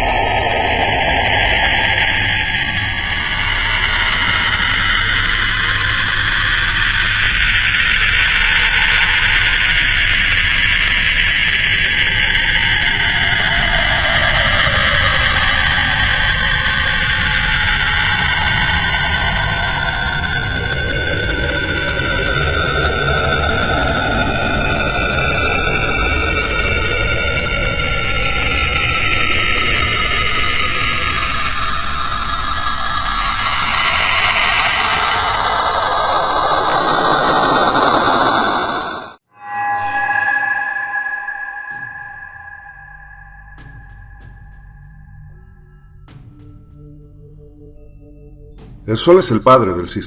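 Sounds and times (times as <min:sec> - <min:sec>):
faint droning tones: 0:00.0 - 0:38.4, 0:39.4 - 0:48.8
dense rushing noise: 0:00.0 - 0:44.6
eerie hiss: 0:00.0 - 0:46.5
low rumble: 0:00.0 - 0:50.0
tone falling in pitch: 0:39.3 - 0:44.6.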